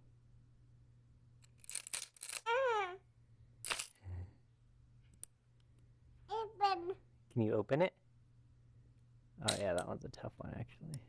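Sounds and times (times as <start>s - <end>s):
child vocalizing: 2.5s - 3.0s, 6.3s - 7.0s.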